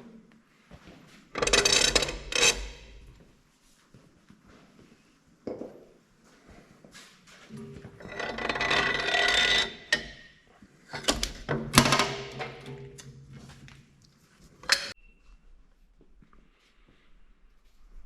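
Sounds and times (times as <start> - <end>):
metal scraping: 1.4 - 3.2, 7.5 - 10.3.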